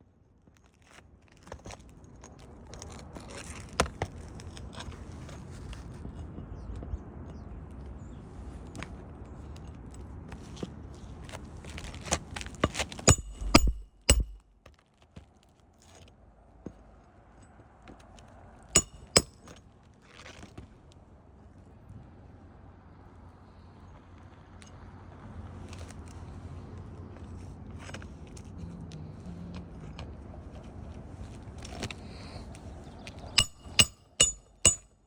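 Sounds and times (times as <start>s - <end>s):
metal tools clinking on shingles: 12.5s - 14.6s, 18.8s - 19.6s, 33.3s - 35.0s.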